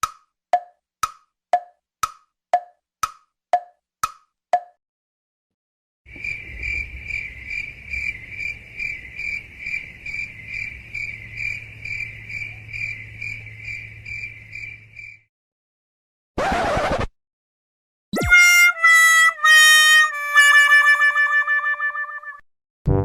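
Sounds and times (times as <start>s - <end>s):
wood-block knocks: 0.0s - 4.8s
cricket chirping: 6.1s - 15.3s.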